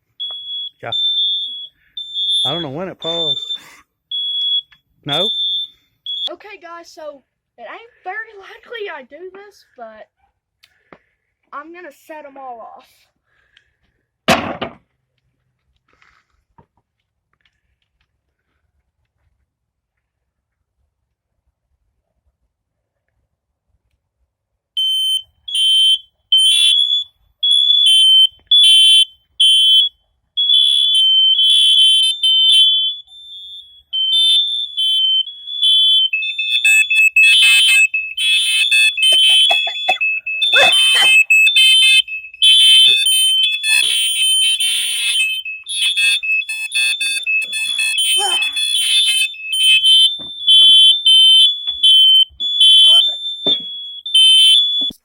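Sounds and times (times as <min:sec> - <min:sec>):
high-pitched smoke alarm beeping: 0:00.1 - 0:06.4, 0:24.8 - 0:55.0
lower-pitched smoke alarm: 0:00.1 - 0:06.4, 0:24.8 - 0:55.0.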